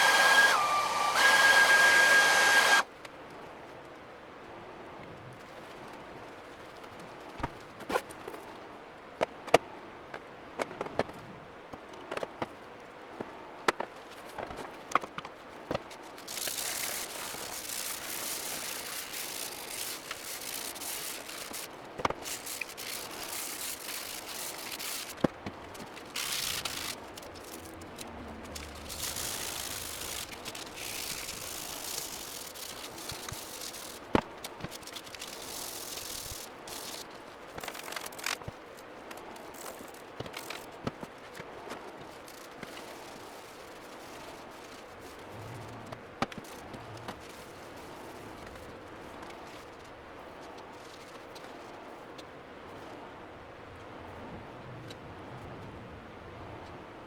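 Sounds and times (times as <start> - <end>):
spray paint can hissing: 0.0 - 2.8.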